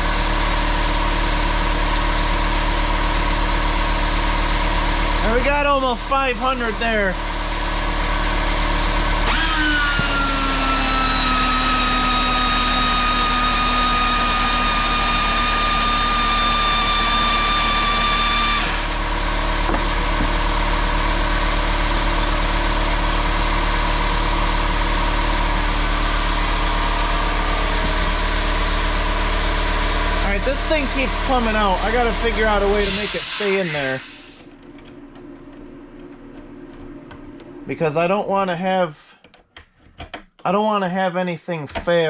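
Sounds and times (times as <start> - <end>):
steady machine hum: 0.0 - 38.5
air grinder high whine: 9.2 - 19.2, 30.2 - 34.4.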